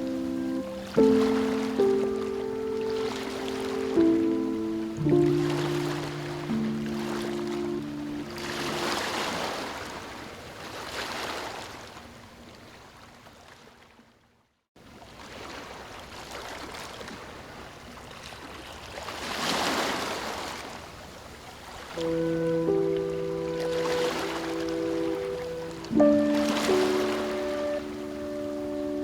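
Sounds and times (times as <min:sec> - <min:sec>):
soft held music notes: 0:00.0 - 0:09.3, 0:22.0 - 0:29.0
ocean surf washing: 0:00.0 - 0:11.8, 0:21.7 - 0:29.0.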